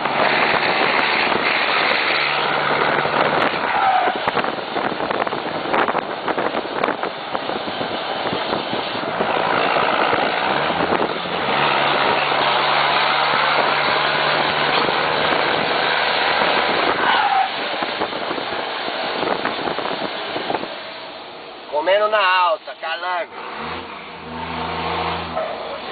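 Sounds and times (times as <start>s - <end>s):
truck diesel engine running: 4.3s - 21.7s.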